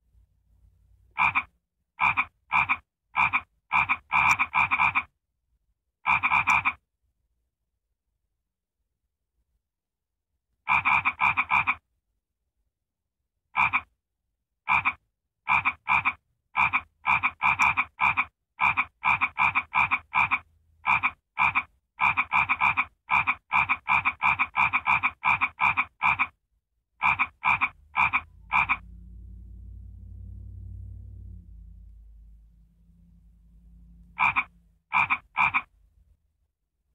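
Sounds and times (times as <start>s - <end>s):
frog croak sound effect: 1.1s - 5.2s, 6.0s - 6.8s, 10.6s - 11.9s, 13.5s - 14.0s, 14.6s - 26.4s, 27.0s - 29.0s, 34.0s - 35.8s
low rumble: 28.2s - 34.8s.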